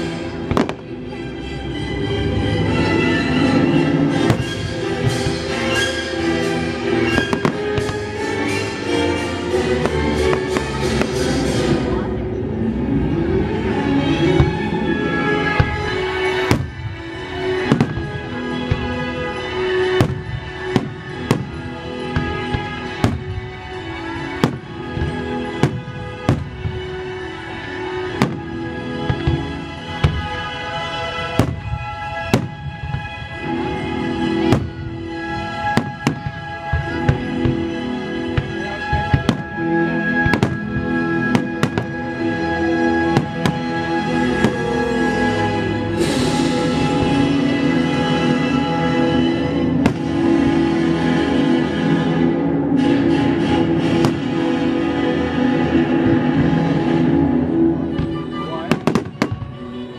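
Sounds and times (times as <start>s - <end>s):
orchestral music: 0.0s - 59.9s
fireworks bangs: 0.4s - 1.0s, 4.1s - 6.0s, 7.0s - 12.0s, 14.1s - 47.5s, 49.2s - 50.8s, 57.9s - 59.6s.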